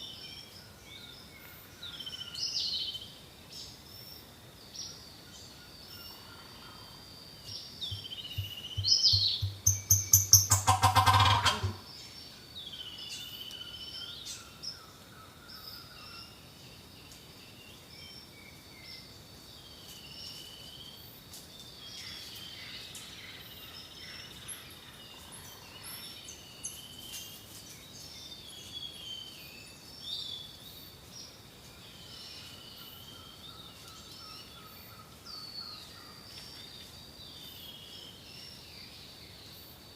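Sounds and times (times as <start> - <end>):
high insect drone: 6.0 - 11.9
birds calling: 7.6 - 12.0
turkey gobbling: 10.5 - 11.8.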